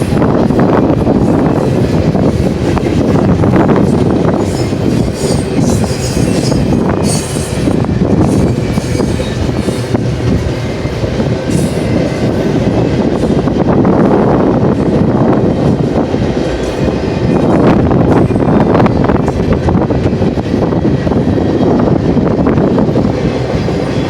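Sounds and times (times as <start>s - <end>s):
train wheels rumbling on rails: 0.0s - 24.0s
wind buffeting microphone: 0.0s - 24.0s
high wheel squeals: 4.4s - 10.0s.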